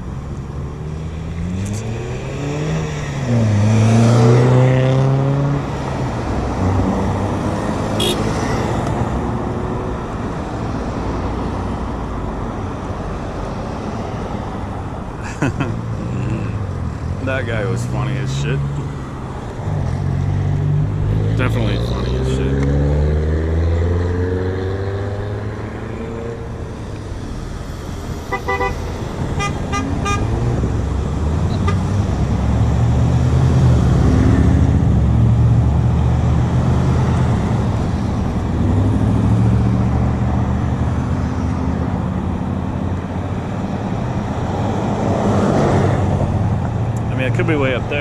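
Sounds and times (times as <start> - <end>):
road traffic passing: 0.0 - 48.0
car horn toots: 8.0 - 8.6, 28.3 - 28.8, 29.4 - 30.4.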